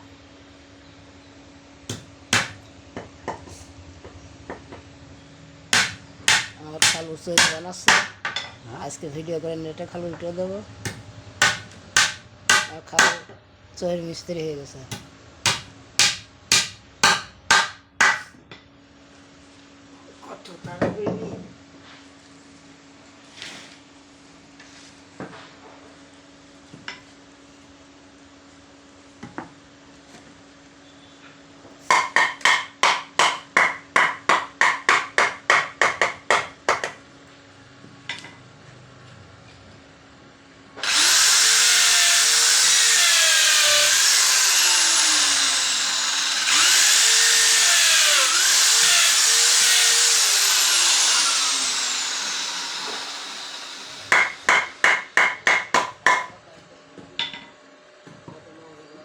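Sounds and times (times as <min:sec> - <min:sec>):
hammer striking wood: 0:01.9 - 0:02.6, 0:05.7 - 0:08.4, 0:10.9 - 0:13.3, 0:14.9 - 0:18.3, 0:31.9 - 0:37.0, 0:47.8 - 0:56.4
power tool cutting wood: 0:05.8 - 0:07.6, 0:11.4 - 0:13.2, 0:15.5 - 0:18.2, 0:40.8 - 0:55.2.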